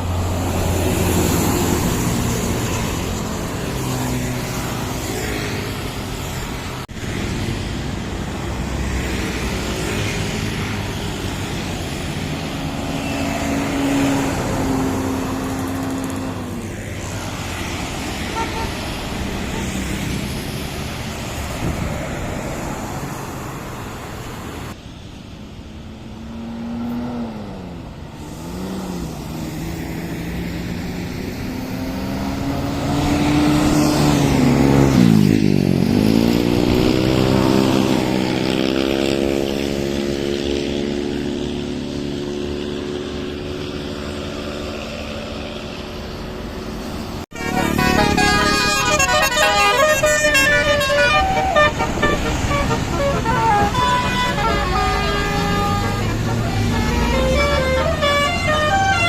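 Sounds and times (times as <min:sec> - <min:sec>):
engine revving and accelerating: 0:26.2 - 0:46.0, 0:47.5 - 0:59.0.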